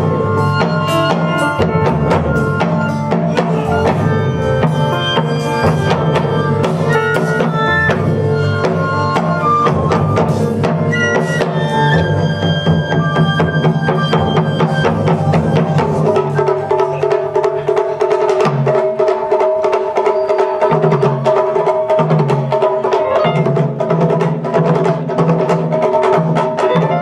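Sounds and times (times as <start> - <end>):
funk groove with bass and drums: 0.0 - 10.9
taiko drum strikes: 0.0 - 11.0, 20.7 - 27.0
keyboard long high notes: 0.0 - 17.4, 23.0 - 23.8.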